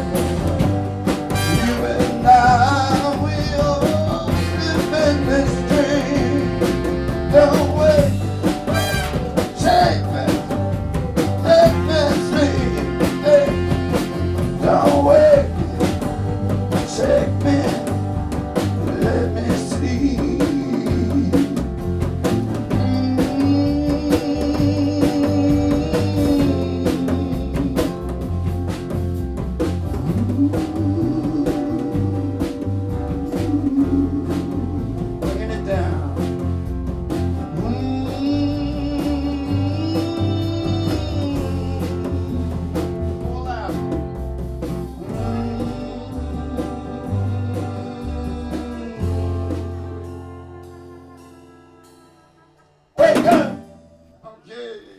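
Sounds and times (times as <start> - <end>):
live band with horn section: 0.0 - 54.0
drum kit beat: 0.0 - 54.2.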